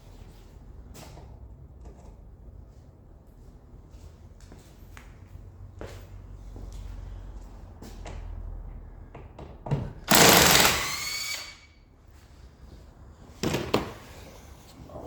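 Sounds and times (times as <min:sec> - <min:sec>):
power drill whining: 0:10.1 - 0:11.7.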